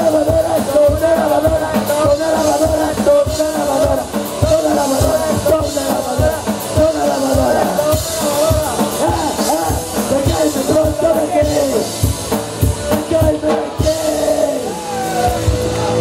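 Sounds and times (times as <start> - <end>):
rock band playing: 0.0 - 16.0.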